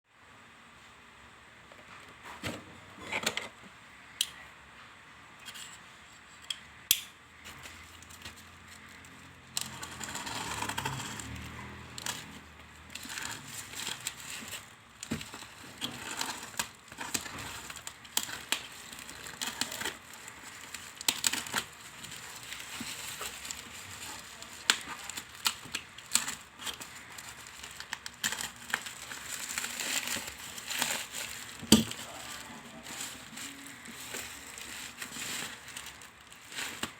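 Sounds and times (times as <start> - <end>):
packaging crinkling and tearing: 7.4 - 36.9.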